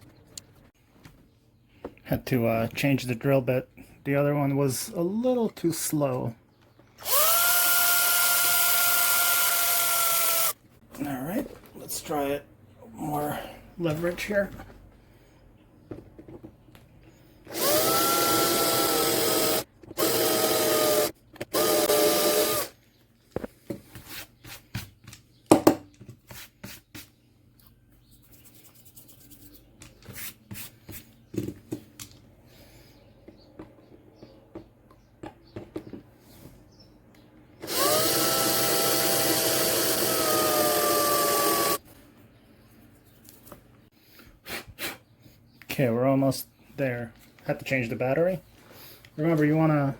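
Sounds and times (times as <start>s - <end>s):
cordless drill whining: 7.0s - 10.6s, 17.5s - 22.8s, 37.6s - 41.8s.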